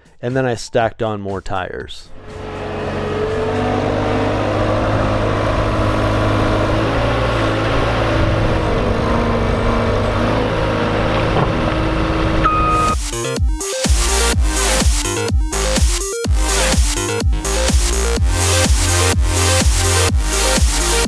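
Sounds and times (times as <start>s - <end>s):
diesel engine running: 2.1s - 21.0s
short high beep: 12.4s - 13.0s
electronic music: 12.4s - 21.0s.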